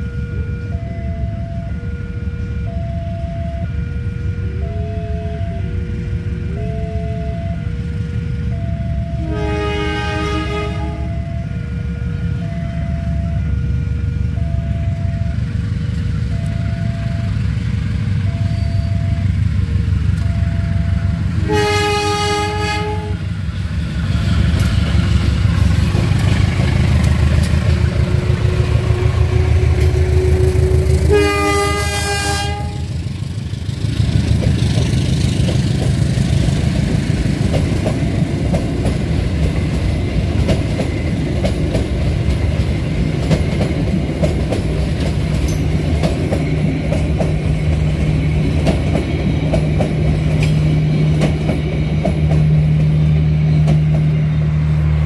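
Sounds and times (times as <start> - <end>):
train horn blasts: 0.0 - 15.4, 20.2 - 23.4, 28.1 - 33.0
locomotive engine rumble: 0.0 - 55.0
train wheels clicking over rail joints: 23.4 - 31.2, 32.5 - 55.0.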